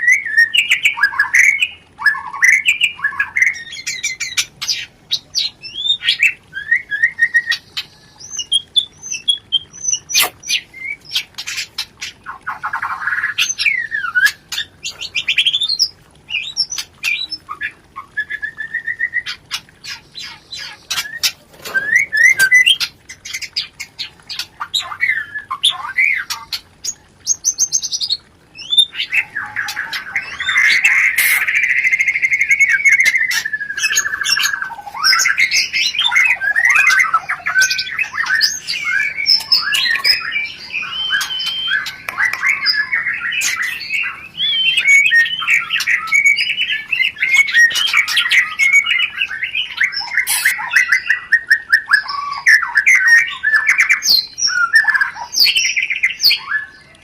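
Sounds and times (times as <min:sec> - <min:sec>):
bird whistled phrases: 0:09.8 - 0:11.0, 0:20.2 - 0:22.8, 0:28.6 - 0:56.9
bird chattering calls: 0:10.1 - 0:10.6, 0:28.9 - 0:51.0.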